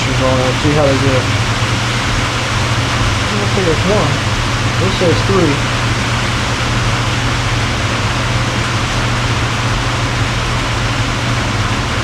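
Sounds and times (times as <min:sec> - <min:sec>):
steady hiss: 0:00.0 - 0:06.3
constant low hum: 0:00.0 - 0:12.0.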